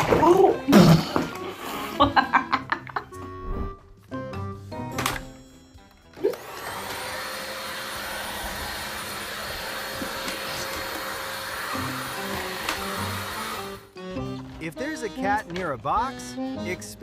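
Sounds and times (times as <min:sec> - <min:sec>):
music: 0:00.0 - 0:17.0
electric motor whirring: 0:06.2 - 0:13.9.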